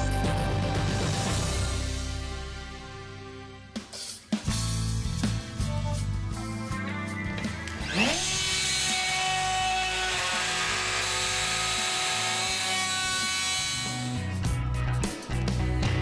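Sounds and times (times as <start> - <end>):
router motor whining and milling: 7.6 - 14.4.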